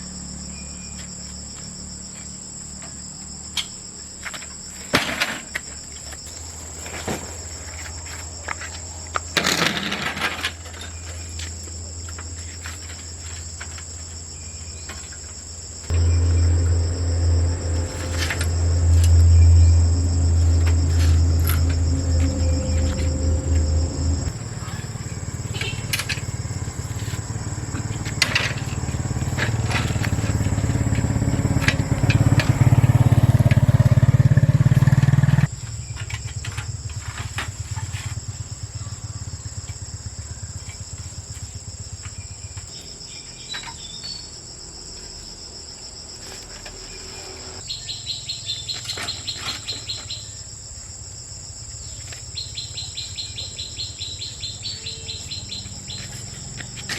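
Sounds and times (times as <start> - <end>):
insects buzzing high: 0.0 - 56.9
loud low rumble: 15.9 - 35.5.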